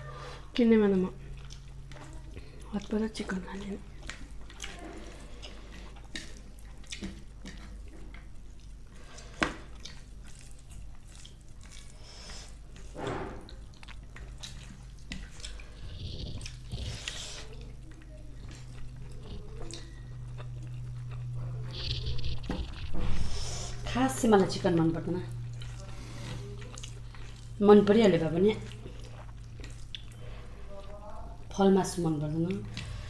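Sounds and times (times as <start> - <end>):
chewing and mouth smacks: 1.3 - 2.9, 3.6 - 22.9, 25.3 - 27.6, 28.6 - 31.0.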